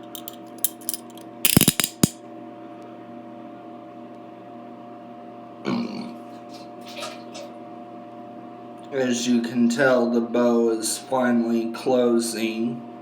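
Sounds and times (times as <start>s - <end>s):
handcuff ratchet clicking: 0.0s - 2.2s.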